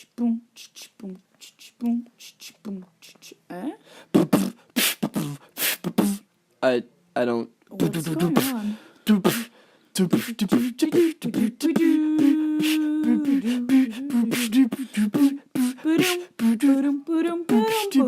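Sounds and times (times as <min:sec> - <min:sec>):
person beatboxing: 0:00.0 - 0:03.4, 0:04.1 - 0:06.3, 0:07.8 - 0:18.0
hummed notes: 0:10.0 - 0:18.0.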